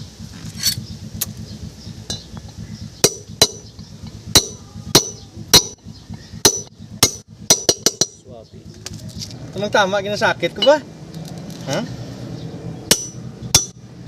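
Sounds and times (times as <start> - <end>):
steady low hum: 0.0 - 14.0
hammer tapping on metal: 3.0 - 3.7, 4.3 - 5.8, 6.4 - 8.2, 12.9 - 13.8.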